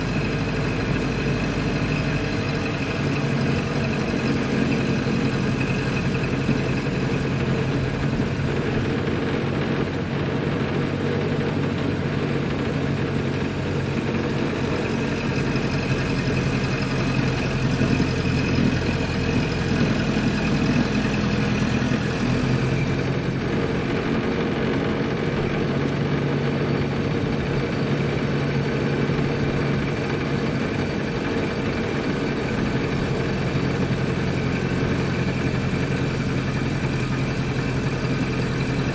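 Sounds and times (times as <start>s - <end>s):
old car engine running: 0.0s - 38.9s.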